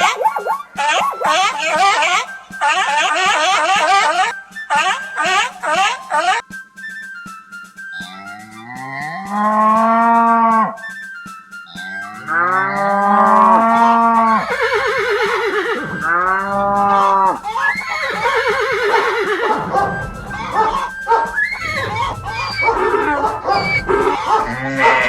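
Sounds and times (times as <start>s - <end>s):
wavering animal calls: 0.0s - 6.4s, 8.0s - 25.0s
faint background music: 0.0s - 25.0s
cow mooing: 13.5s - 25.0s.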